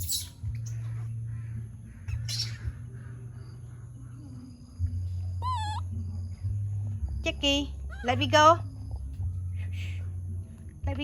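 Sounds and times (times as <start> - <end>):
high wavering animal call: 5.4 - 5.9.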